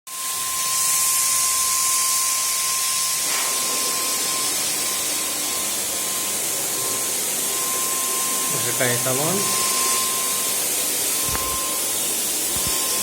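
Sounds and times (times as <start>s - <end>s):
paint spray gun hissing: 0.4s - 13.0s
high whine: 0.6s - 13.0s.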